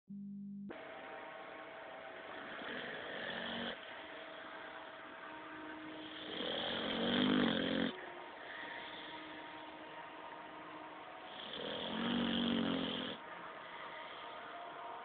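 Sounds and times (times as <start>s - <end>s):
boy snoring: 2.4s - 3.8s, 6.0s - 8.0s, 11.4s - 13.2s.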